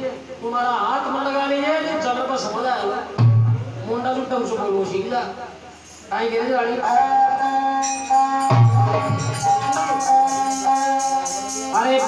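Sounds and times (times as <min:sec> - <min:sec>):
jingling percussion beat: 0:06.8 - 0:12.0
long held melody notes: 0:06.8 - 0:12.0.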